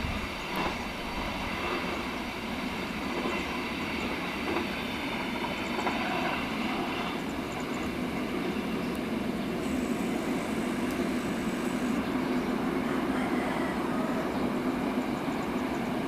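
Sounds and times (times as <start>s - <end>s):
train wheels rolling on rails: 0.0s - 16.0s.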